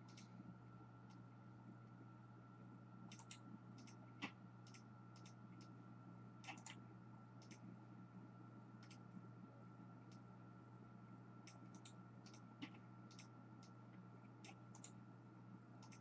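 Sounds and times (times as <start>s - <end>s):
computer mouse and keyboard clicks: 0.0s - 0.3s, 3.1s - 5.8s, 6.4s - 6.8s, 7.4s - 7.7s, 8.8s - 9.0s, 11.4s - 15.0s, 15.8s - 16.0s
faint steady hum: 0.0s - 16.0s.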